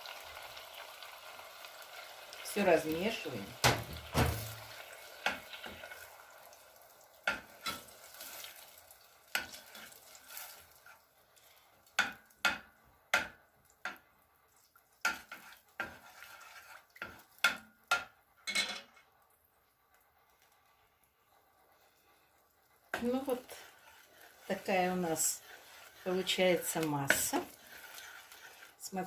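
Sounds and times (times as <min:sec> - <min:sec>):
faint sizzle: 0:00.0 - 0:29.0
spoon scraping and knocking a pot: 0:15.0 - 0:19.0, 0:23.0 - 0:28.7.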